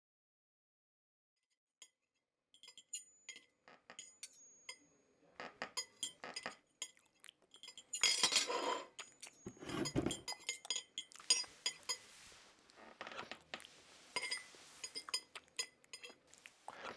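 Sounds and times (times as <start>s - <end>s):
glass and cutlery clinking: 2.6s - 12.2s, 14.1s - 16.2s.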